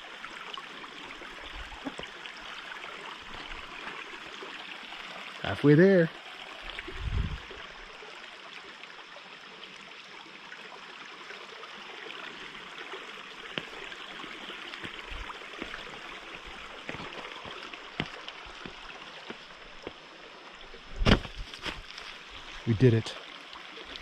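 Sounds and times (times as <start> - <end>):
brook rushing over rocks: 13.2 - 20.0, 20.6 - 23.0
footsteps on rocky trail: 13.6 - 20.0, 20.9 - 22.5
loud thump: 21.0 - 21.4.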